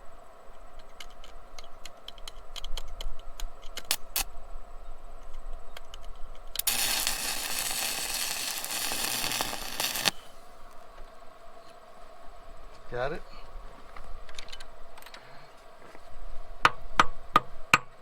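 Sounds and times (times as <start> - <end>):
welding arc burning: 6.6 - 10.7.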